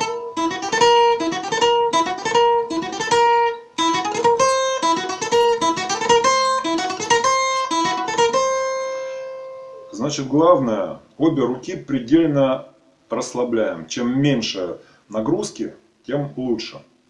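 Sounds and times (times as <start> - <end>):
flamenco acoustic guitar: 0.0 - 10.0.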